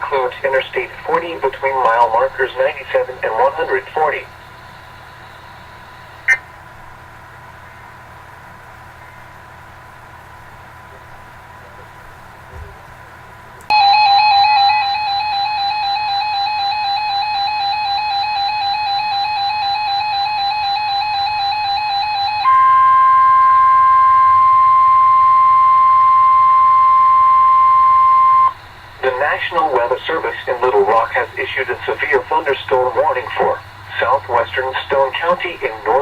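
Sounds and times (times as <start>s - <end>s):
steady warning alarm tone: 0.0s - 6.5s, 13.7s - 36.0s
faint radio hiss: 0.0s - 13.7s, 22.7s - 36.0s
pulsing electronic alarm tone: 4.2s - 6.4s, 13.7s - 36.0s.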